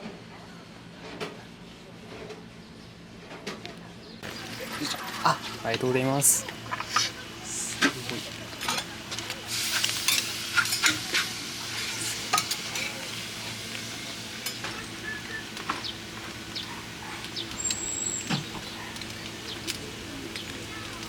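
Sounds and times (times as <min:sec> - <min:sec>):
meat sizzling on a griddle: 0:04.3 - 0:21.0.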